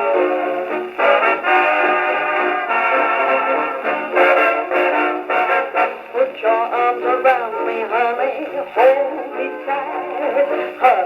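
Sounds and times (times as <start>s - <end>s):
dance band record on gramophone: 0.0s - 11.0s
man singing: 6.1s - 11.0s.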